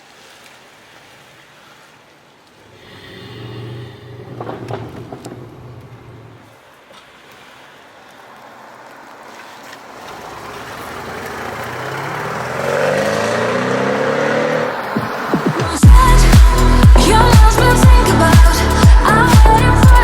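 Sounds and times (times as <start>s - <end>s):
car engine accelerating: 2.8s - 6.5s, 10.0s - 16.2s.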